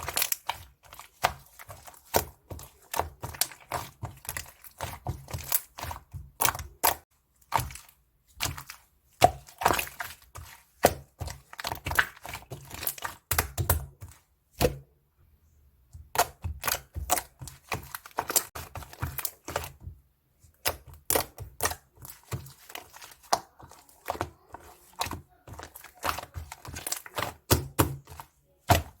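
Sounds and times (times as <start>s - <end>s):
slime squished by hand: 20.5s - 29.0s.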